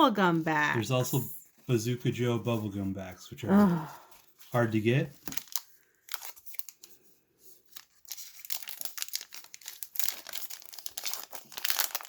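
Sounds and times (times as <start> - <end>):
cards being handled: 4.1 - 12.0
plastic wrapper crinkling: 4.2 - 12.0.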